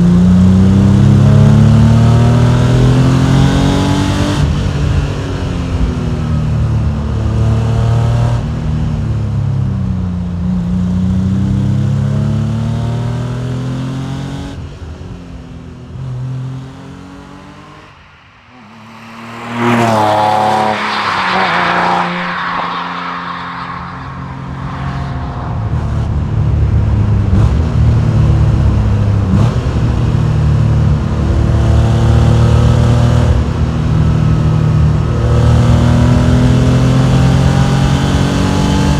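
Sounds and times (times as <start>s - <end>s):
car engine revving: 10.6s - 38.9s.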